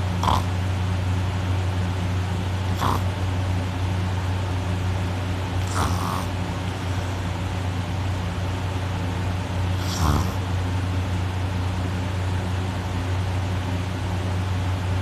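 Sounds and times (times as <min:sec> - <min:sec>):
steady low hum: 0:00.0 - 0:15.0
person snoring: 0:00.2 - 0:00.5, 0:02.8 - 0:03.1, 0:05.6 - 0:06.3, 0:09.7 - 0:10.4.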